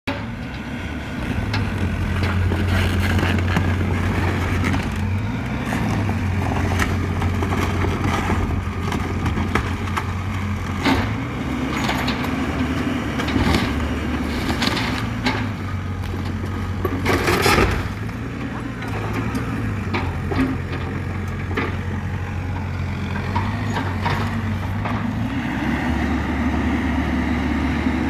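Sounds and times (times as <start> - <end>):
excavator diesel engine running: 0.1 - 28.0
debris knocks and crunches: 2.2 - 21.8
crashing clatter: 5.9 - 21.8.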